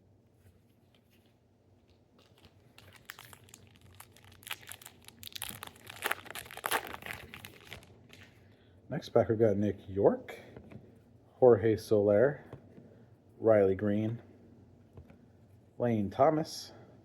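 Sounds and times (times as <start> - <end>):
wrapper crinkling and tearing: 1.8 - 8.4.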